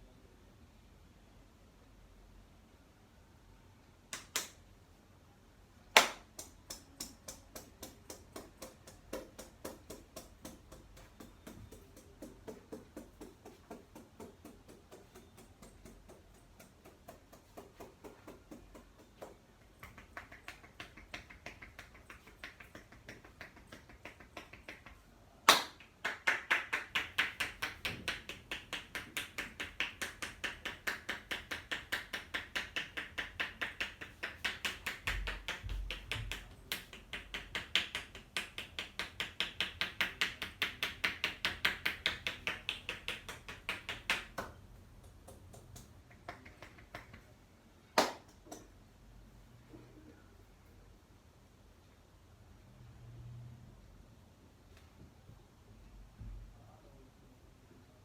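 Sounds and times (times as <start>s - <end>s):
hands tapping on body: 6.0s - 47.3s, 48.0s - 48.7s.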